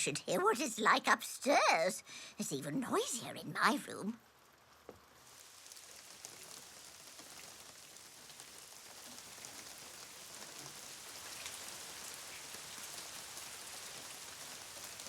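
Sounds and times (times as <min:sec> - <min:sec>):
heavy rain falling: 0:05.4 - 0:15.0.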